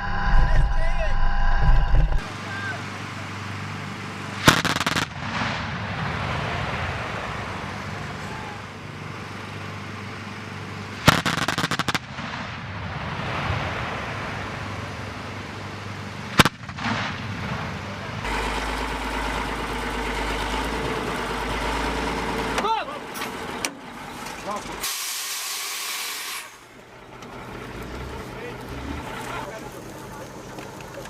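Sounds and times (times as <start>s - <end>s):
steady engine: 0.0s - 31.0s
cannon firing rapid shots: 4.4s - 5.9s, 11.0s - 12.9s, 16.3s - 17.8s.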